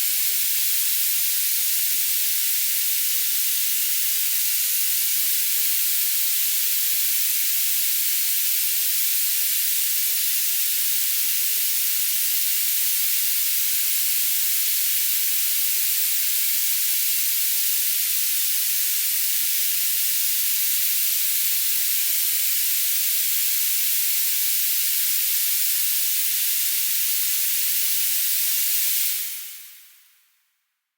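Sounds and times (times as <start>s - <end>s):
steady high-pitched hiss: 15.8s - 30.5s.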